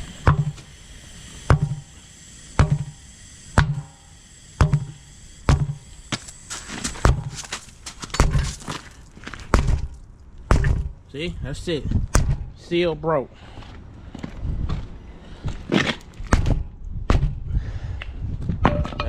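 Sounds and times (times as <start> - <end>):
hammer striking a tire: 0.2 - 0.6, 1.5 - 1.9, 2.6 - 6.3, 7.0 - 8.6, 9.5 - 10.9.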